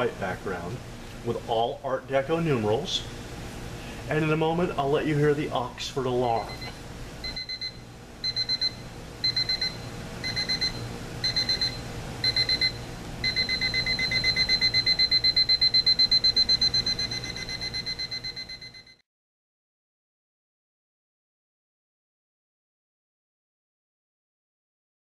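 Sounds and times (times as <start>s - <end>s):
electronic alarm clock beeping: 6.4s - 19.0s.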